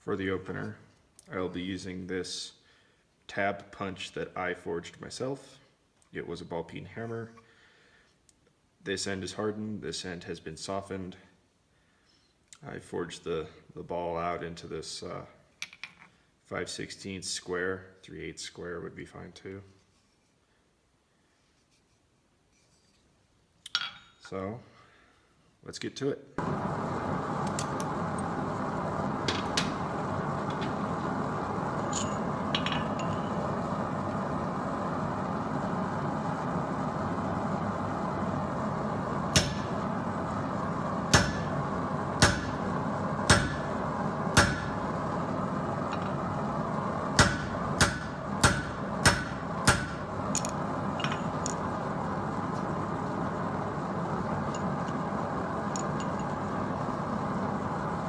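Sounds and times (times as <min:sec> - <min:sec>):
forge roaring steadily: 0:26.4 - 0:58.0
hammer clanging on anvil: 0:41.2 - 0:41.5, 0:43.3 - 0:43.7, 0:44.4 - 0:44.8, 0:47.2 - 0:50.0.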